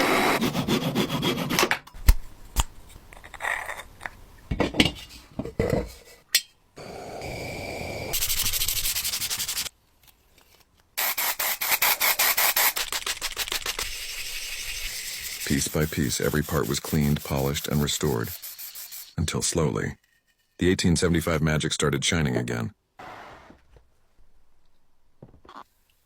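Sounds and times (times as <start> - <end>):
sanding and rubbing strokes: 0.0 - 1.6, 8.1 - 9.7, 11.0 - 19.4
back-and-forth scrubbing strokes: 13.3 - 19.2.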